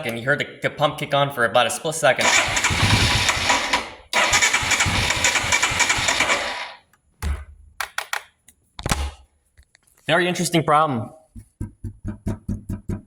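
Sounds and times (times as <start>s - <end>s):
electric starter cranking engine: 2.2s - 6.8s.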